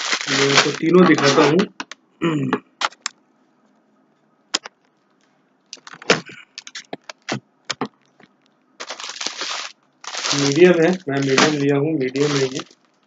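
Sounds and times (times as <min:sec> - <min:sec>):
packaging rustle: 0:00.0 - 0:01.6, 0:08.8 - 0:13.0
packaging crackling and clicking: 0:00.0 - 0:02.0, 0:05.7 - 0:13.0.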